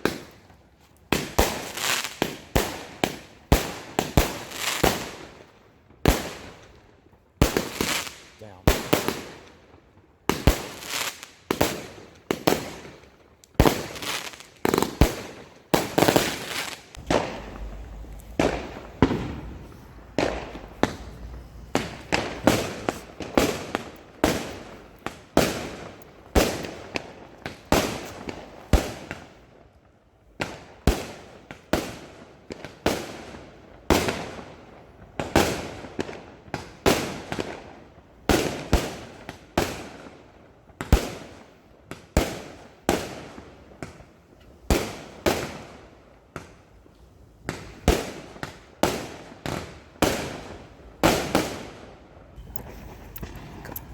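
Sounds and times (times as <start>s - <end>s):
fireworks bangs echoing: 1.1s - 6.8s, 7.4s - 29.4s, 47.4s - 53.9s.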